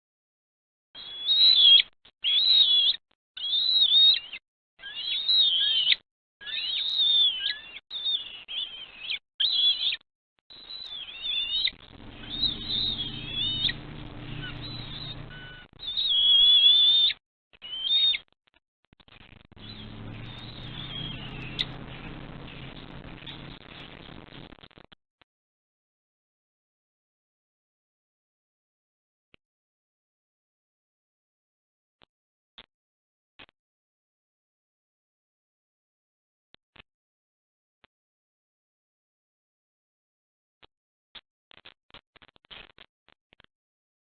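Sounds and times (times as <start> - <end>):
eagles calling: 10.9 - 16.2, 19.6 - 23.6
low steady hum: 11.9 - 15.7, 19.6 - 24.4.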